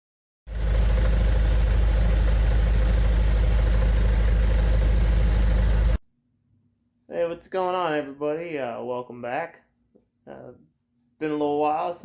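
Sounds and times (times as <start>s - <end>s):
car engine idling: 0.5s - 6.0s.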